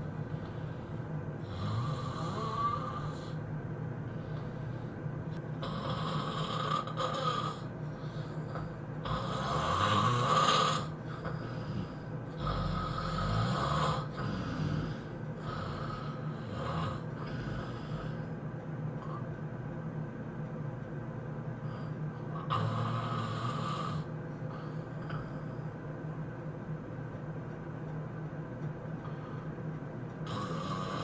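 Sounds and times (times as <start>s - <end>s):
person snoring heavily: 1.4s - 3.4s, 5.6s - 18.3s, 21.7s - 25.5s, 30.2s - 31.0s.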